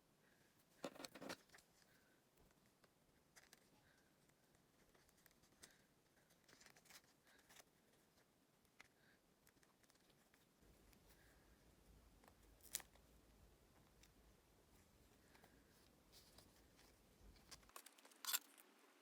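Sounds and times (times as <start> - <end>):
light rustles of craft materials: 0.5 - 19.0.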